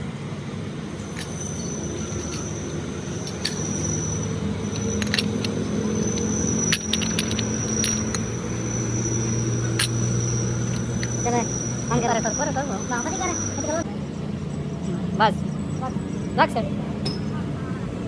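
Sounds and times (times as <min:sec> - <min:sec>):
high steady whine: 0:00.0 - 0:13.8
engine running: 0:00.0 - 0:18.0
metallic clicks and clinks: 0:01.0 - 0:13.8.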